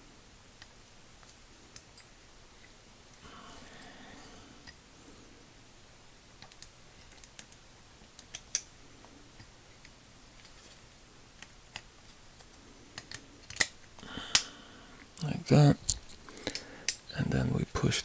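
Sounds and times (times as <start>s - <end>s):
small metal parts clicking: 11.4s - 14.5s.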